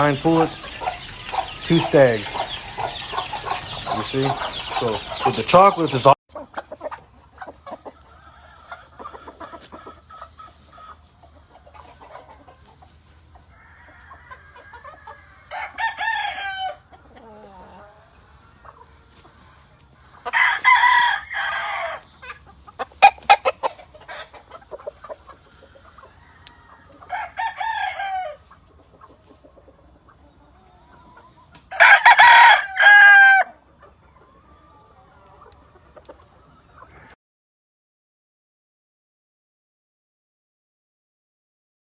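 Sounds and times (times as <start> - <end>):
roosters crowing: 0.0 - 6.2, 8.0 - 10.6, 13.4 - 18.7, 20.2 - 24.4, 25.6 - 28.5, 31.7 - 33.6
chicks peeping: 0.0 - 15.4, 16.9 - 27.1, 28.4 - 37.2
hens clucking: 0.0 - 37.2.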